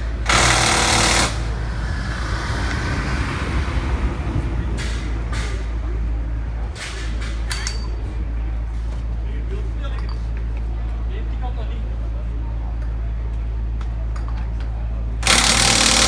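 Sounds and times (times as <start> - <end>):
rally car passing at speed: 1.5 - 5.3.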